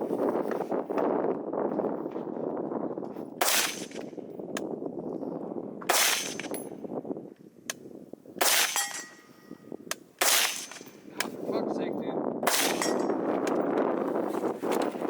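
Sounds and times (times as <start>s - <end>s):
rifle shots with ringing tail: 3.4s - 4.2s, 5.9s - 6.8s, 8.4s - 11.1s, 12.4s - 13.2s.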